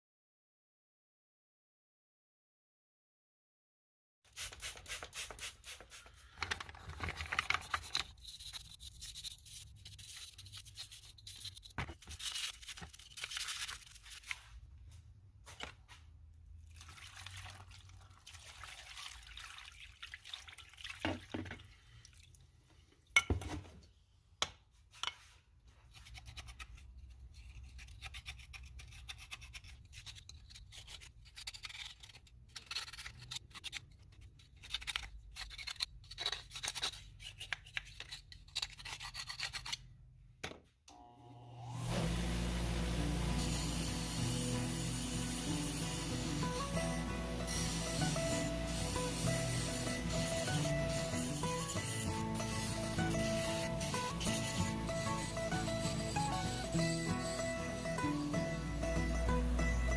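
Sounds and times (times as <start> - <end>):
brush scrubbing: 4.3 - 6.4, 7.5 - 14.6.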